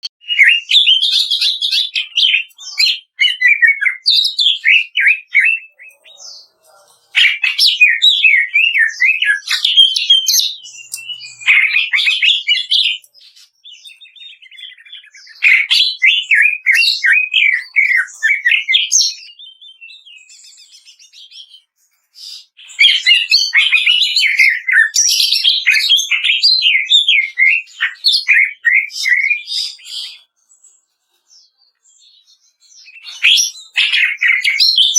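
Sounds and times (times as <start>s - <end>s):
bird singing chirps and whistles: 0.0s - 34.9s.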